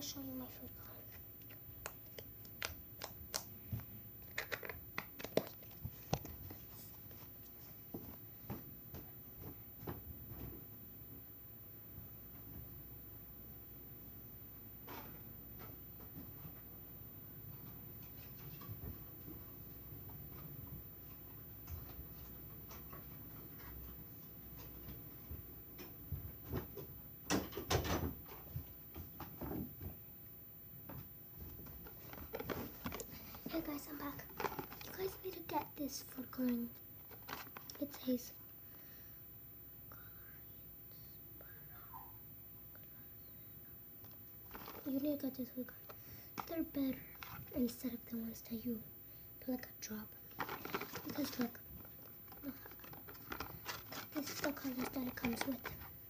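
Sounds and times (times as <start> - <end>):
crinkly handling noises: 31.4 - 38.3, 44.0 - 47.9, 49.8 - 56.0.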